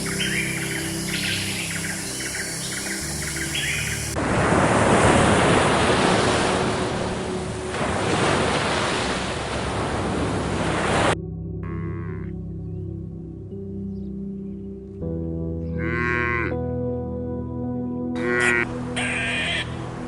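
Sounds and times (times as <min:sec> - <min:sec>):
ocean surf rushing: 0:00.0 - 0:11.2
low music drone: 0:00.0 - 0:20.0
high animal calls: 0:11.6 - 0:12.3, 0:15.8 - 0:16.5, 0:18.2 - 0:19.8.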